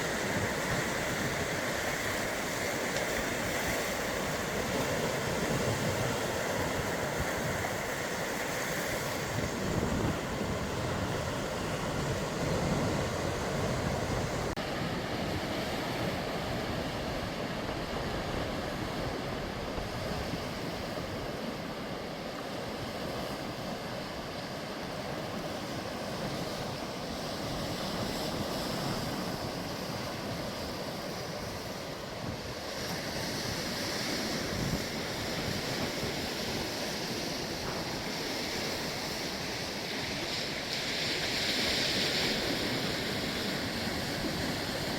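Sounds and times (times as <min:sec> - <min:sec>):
sea waves washing on shore: 0:00.0 - 0:44.9
wind buffeting microphone: 0:00.0 - 0:44.9.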